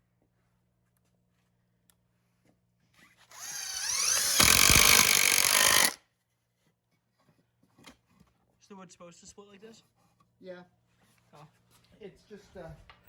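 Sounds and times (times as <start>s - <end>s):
power drill whine: 3.3s - 6.0s
screw driven into wood: 3.3s - 6.0s.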